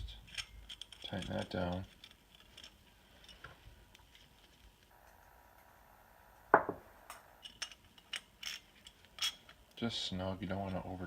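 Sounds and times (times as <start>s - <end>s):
wrench clicking on metal parts: 0.1s - 3.4s, 7.4s - 9.7s
sharp metal knock: 6.5s - 7.2s.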